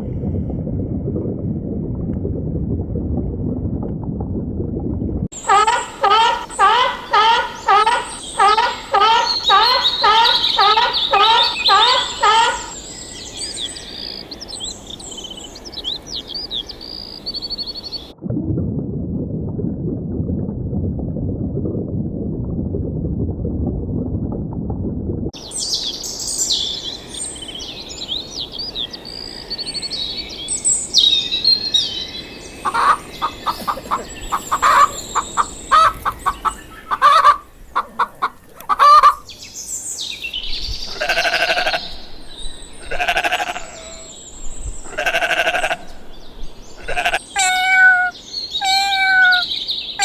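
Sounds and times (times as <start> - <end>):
low rumbling noise: 0.0 - 6.0, 18.0 - 25.6
small birds chirping: 5.4 - 18.1, 25.4 - 45.4
sheep or goats bleating: 42.9 - 43.7.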